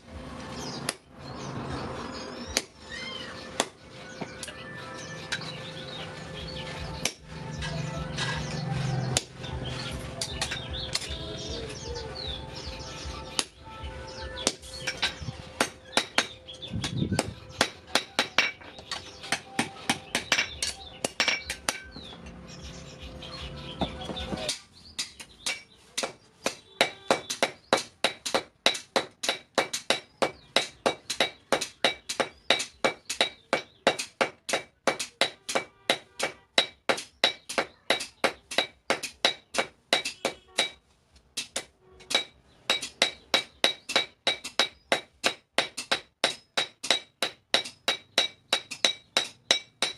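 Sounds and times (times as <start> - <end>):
hammer striking steel on anvil: 14.4 - 22.0, 24.5 - 40.8, 41.4 - 49.9.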